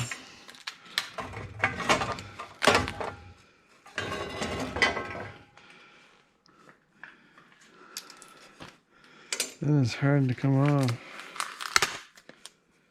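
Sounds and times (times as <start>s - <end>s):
metal scraping rattle: 1.2s - 5.4s.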